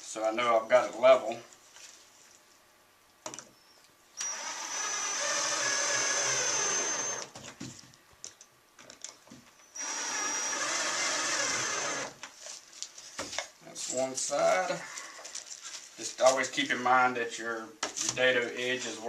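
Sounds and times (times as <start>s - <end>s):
electric drill driving screws: 4.2s - 7.4s, 9.7s - 12.2s.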